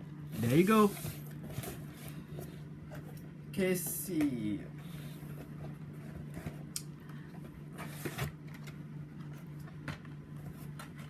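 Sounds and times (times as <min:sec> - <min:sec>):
steady low hum: 0:00.0 - 0:11.0
card and plastic rustling: 0:00.4 - 0:03.1.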